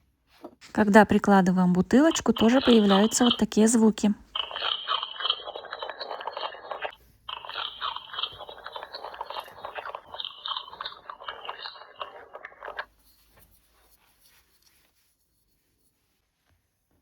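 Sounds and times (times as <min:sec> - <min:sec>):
toy electronic chewing sound: 0:01.9 - 0:12.9.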